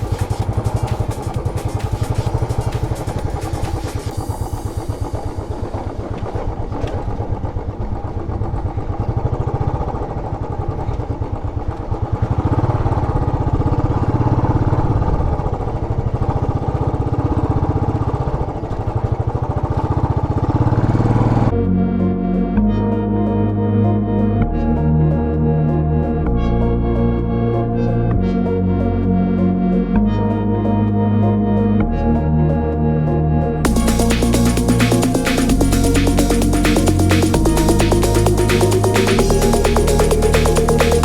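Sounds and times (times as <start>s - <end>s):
motorcycle engine running: 0.0s - 21.6s, 33.6s - 41.0s.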